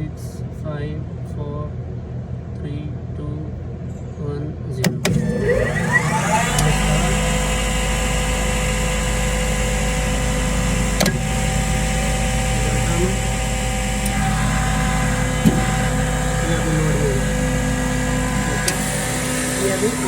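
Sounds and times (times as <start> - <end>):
air compressor humming and whining: 0.0 - 20.0.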